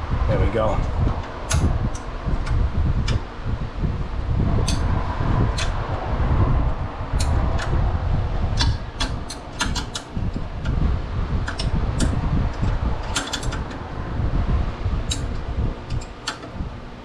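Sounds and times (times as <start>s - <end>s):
low rumble: 0.0s - 17.0s
ratchet wrench clicking: 8.6s - 10.8s, 11.4s - 13.8s, 15.9s - 16.6s.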